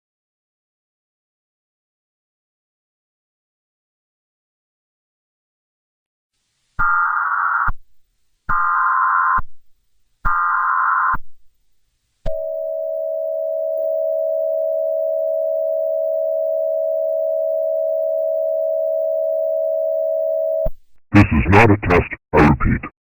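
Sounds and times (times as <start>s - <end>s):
digital data bursts: 10.3s - 11.2s
steady attention tone: 12.3s - 22.9s.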